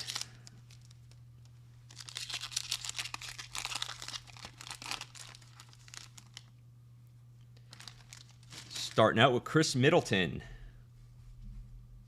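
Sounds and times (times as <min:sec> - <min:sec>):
wrapper tearing and crumpling: 0:00.0 - 0:01.2, 0:01.9 - 0:06.5, 0:07.6 - 0:09.0.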